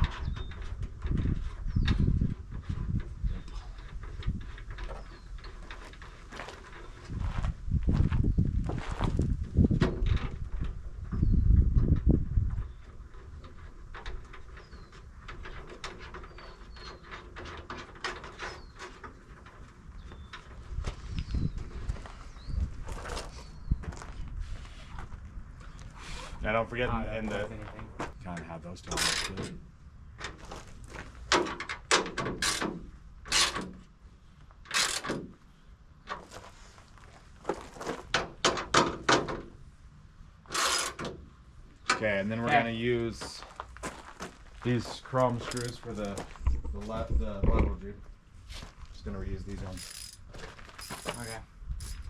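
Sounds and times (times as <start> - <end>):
knocks and clicks of metal parts: 31.3 - 33.8, 38.1 - 39.5, 45.4 - 46.6, 49.8 - 52.0.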